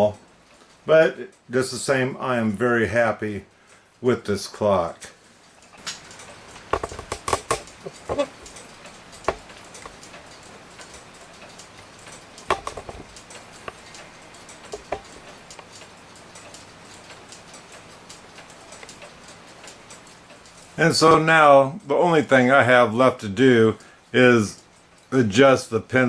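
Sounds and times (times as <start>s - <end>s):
wall clock ticking: 0.0s - 26.0s
clock clicks and knocks: 5.7s - 21.5s.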